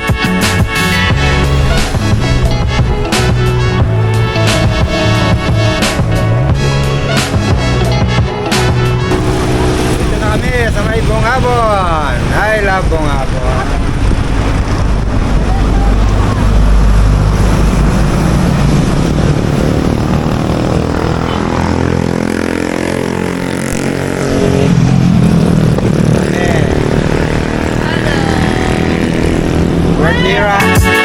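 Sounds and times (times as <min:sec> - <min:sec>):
music: 0:00.0 - 0:12.5, 0:26.2 - 0:31.0
road and wind noise: 0:00.0 - 0:31.0
motorcycle engine running: 0:00.2 - 0:30.2.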